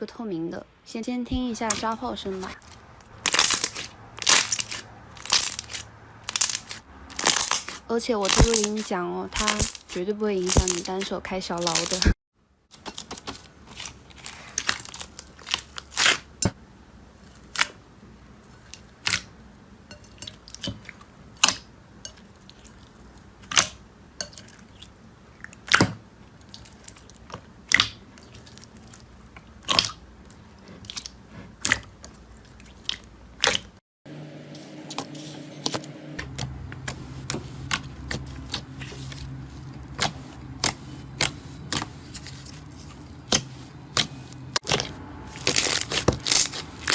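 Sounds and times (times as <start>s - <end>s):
steady low hum: 34.1s - 46.9s
small crackles: 36.3s - 46.9s.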